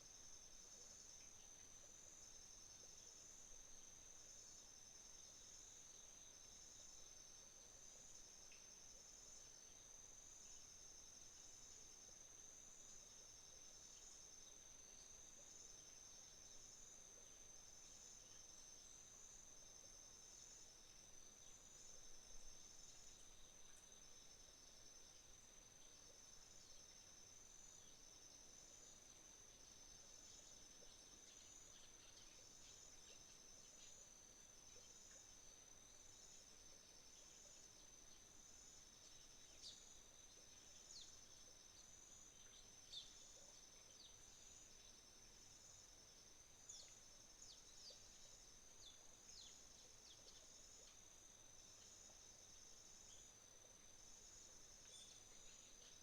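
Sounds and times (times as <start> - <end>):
crickets trilling: 12.5 - 56.0.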